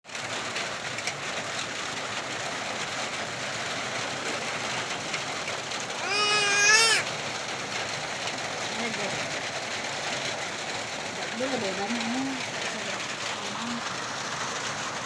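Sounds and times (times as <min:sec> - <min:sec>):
heavy rain hissing: 0:00.1 - 0:15.0
wavering cry: 0:06.0 - 0:07.0.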